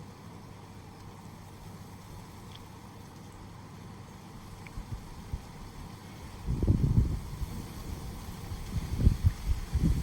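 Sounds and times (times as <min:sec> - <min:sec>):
light rain hiss: 0:00.0 - 0:10.0
wind rumbling on microphone: 0:04.5 - 0:10.0.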